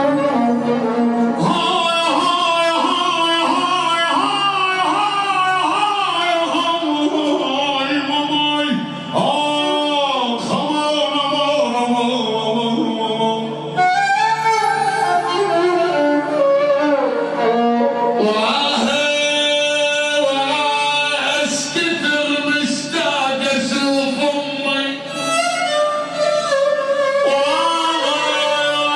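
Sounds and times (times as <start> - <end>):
instrumental accompaniment: 0.0 - 28.9
person singing ornamented melody: 27.1 - 28.9.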